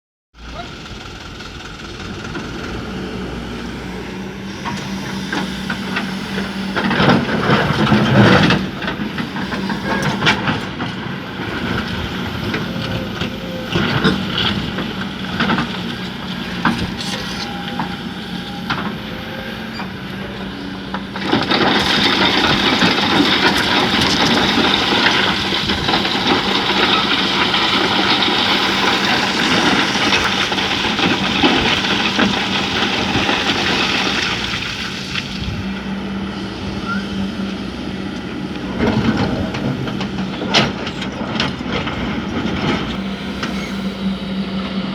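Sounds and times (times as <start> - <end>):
excavator diesel engine humming: 0.4 - 44.9
knocks and clanks: 38.6 - 43.8.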